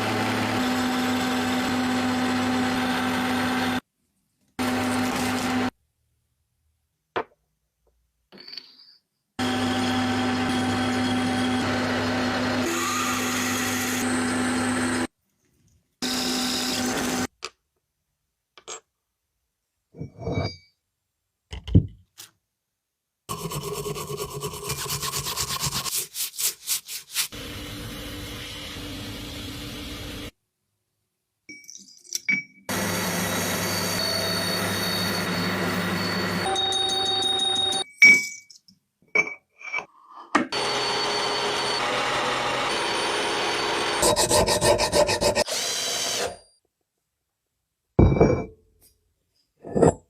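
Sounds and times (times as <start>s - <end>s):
knocks and scrapes: 19.9s - 20.7s, 49.4s - 50.0s.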